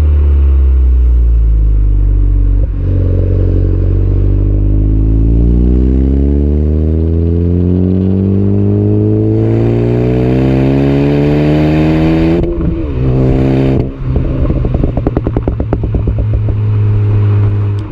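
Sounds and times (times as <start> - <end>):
car engine revving: 0.0 - 17.9
exhaust crackles and pops: 7.6 - 8.4, 12.0 - 17.9.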